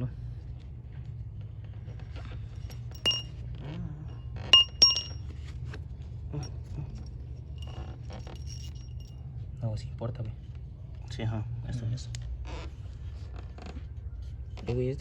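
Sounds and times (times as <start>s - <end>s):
steady low hum: 0.0s - 3.4s, 4.5s - 5.3s
small metal parts clinking: 2.7s - 3.3s, 4.6s - 5.2s, 7.6s - 9.1s.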